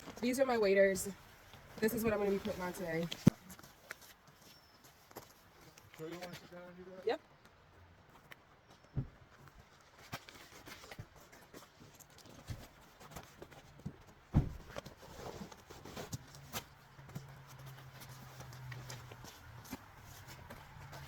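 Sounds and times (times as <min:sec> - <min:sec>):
knocks and rustles of clothing: 0:08.1 - 0:21.0
loud thump: 0:14.3 - 0:14.7.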